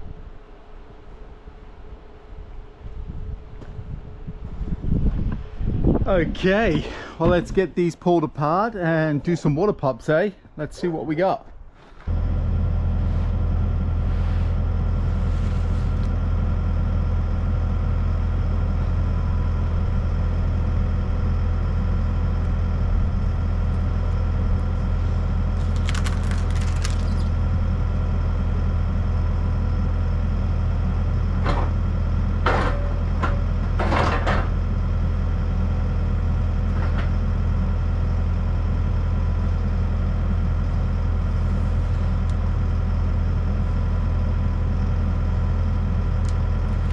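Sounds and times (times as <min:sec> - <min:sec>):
engine idling: 0:12.1 - 0:33.8.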